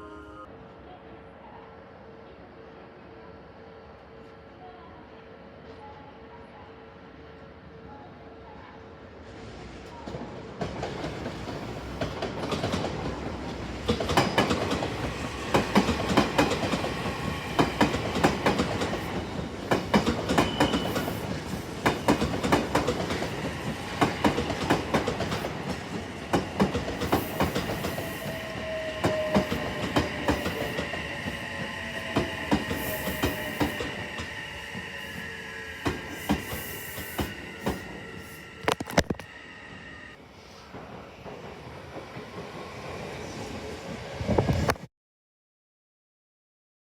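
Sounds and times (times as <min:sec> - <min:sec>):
train wheels clicking over rail joints: 0:10.6 - 0:28.4, 0:35.8 - 0:38.0.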